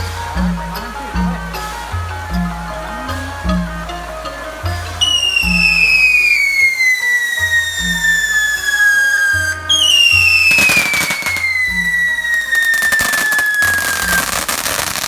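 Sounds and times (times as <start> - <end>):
music: 0.0 - 15.0
crackling firework pops: 5.0 - 15.0
falling firework whistle: 5.0 - 15.0.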